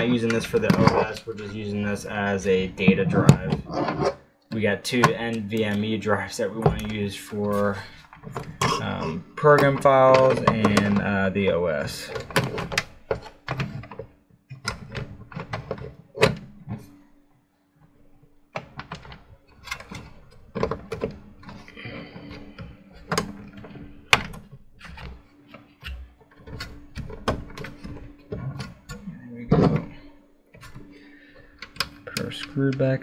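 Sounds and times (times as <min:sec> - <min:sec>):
computer hardware clicks and knocks: 0:00.0 - 0:02.0, 0:08.0 - 0:11.1, 0:18.5 - 0:33.0
faint steady hum: 0:00.0 - 0:33.0.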